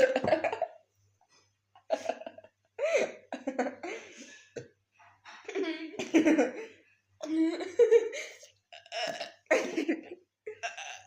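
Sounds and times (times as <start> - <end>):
people laughing and giggling: 0.0 - 0.7, 1.8 - 4.6, 5.4 - 6.8
cough-like throat sounds: 8.8 - 11.0.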